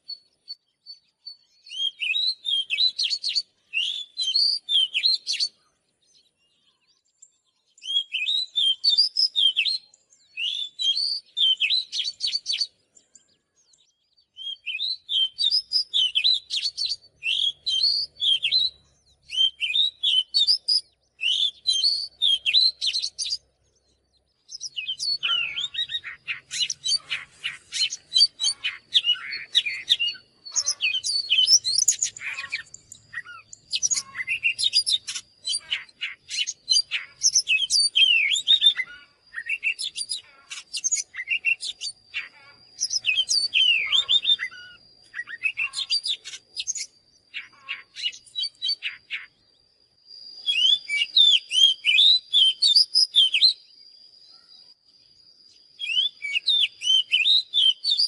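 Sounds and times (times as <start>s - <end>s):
bird singing whistles and trills: 0.0s - 58.0s.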